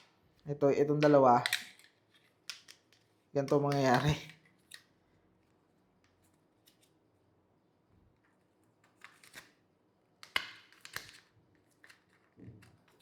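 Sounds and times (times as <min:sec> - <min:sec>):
plastic segments clicking: 0:01.0 - 0:01.9.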